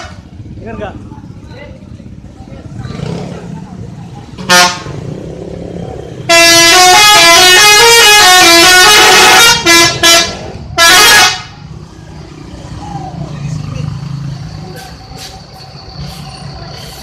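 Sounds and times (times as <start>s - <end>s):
horn toots and blast: 4.4s - 5.0s, 6.3s - 11.6s
bus musical horn tune: 4.5s - 4.9s, 6.3s - 11.6s.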